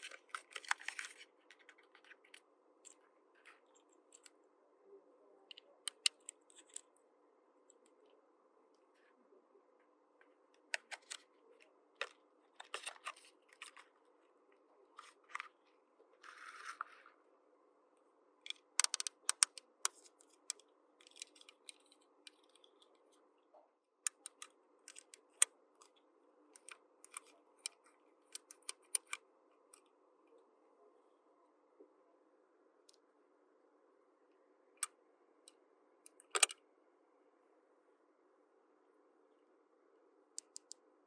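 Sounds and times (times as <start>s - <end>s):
faint steady hum: 0.0s - 41.0s
rustling scrape: 16.2s - 17.2s.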